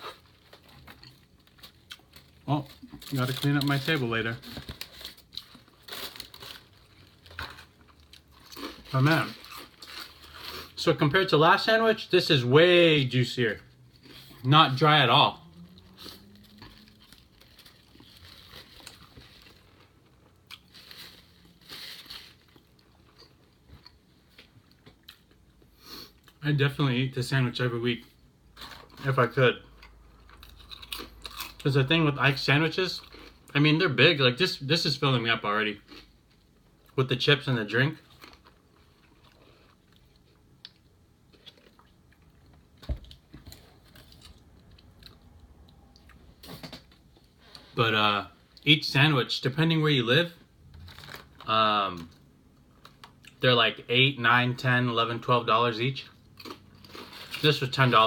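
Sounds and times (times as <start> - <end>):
person chewing food: 0.0 - 3.0, 29.8 - 31.6, 38.1 - 46.4, 56.2 - 57.3.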